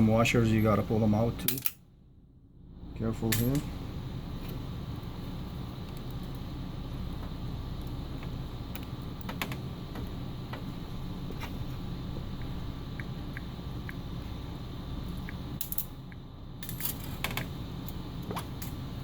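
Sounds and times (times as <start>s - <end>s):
steady low hum: 0.0s - 19.0s
metal parts clicking: 1.4s - 1.8s.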